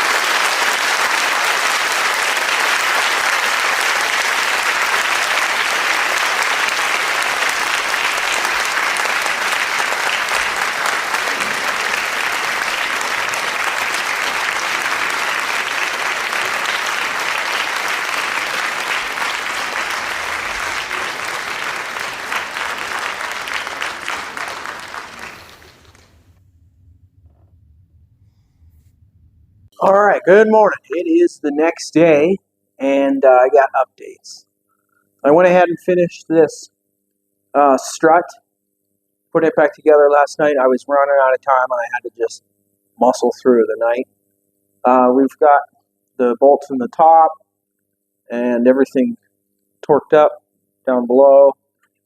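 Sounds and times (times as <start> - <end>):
crowd applauding: 0.0 - 26.3.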